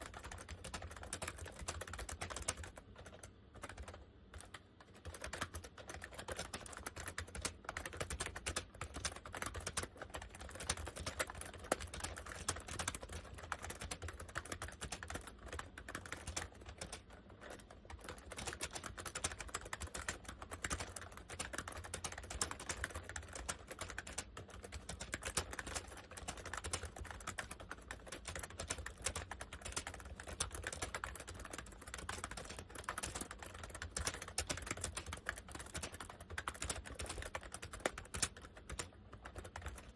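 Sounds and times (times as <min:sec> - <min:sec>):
keyboard keystroke clicks: 0:18.0 - 0:39.9.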